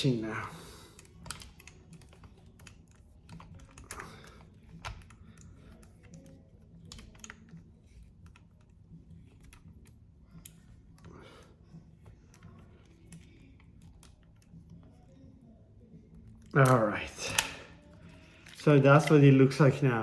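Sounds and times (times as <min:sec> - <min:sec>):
screw clicking as turned: 0:01.0 - 0:08.7.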